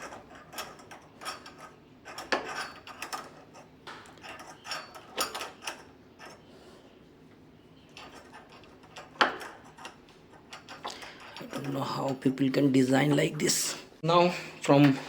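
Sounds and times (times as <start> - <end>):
screwdriver clicking and scraping: 0.0 - 6.4, 7.9 - 11.8.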